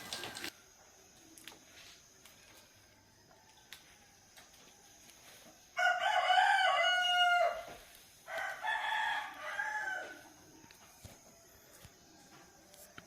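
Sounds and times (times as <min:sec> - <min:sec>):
rooster crowing: 0:05.8 - 0:10.3.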